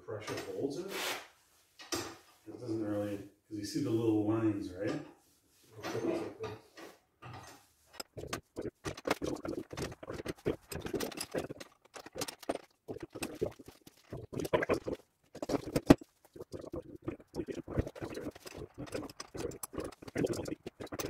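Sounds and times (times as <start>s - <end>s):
metal parts and tools clicking: 9.8s - 14.1s, 18.3s - 21.0s.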